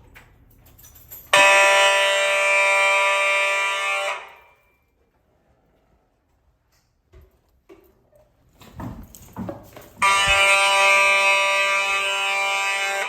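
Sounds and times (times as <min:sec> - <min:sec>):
fire alarm horn buzzing: 0:01.2 - 0:04.9, 0:10.0 - 0:13.0.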